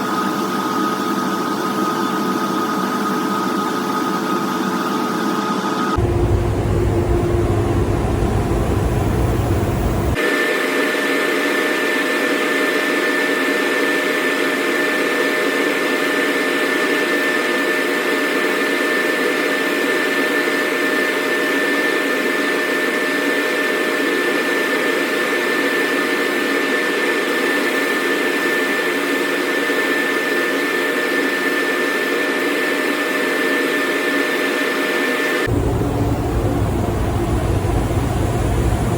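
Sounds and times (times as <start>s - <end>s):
deep rumble: 6.0s - 10.2s, 35.5s - 38.9s.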